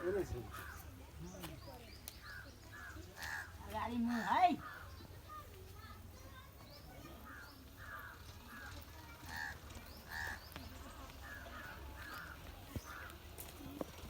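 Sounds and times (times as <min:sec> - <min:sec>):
crows cawing: 0:02.3 - 0:05.0, 0:07.3 - 0:10.6, 0:11.2 - 0:13.2.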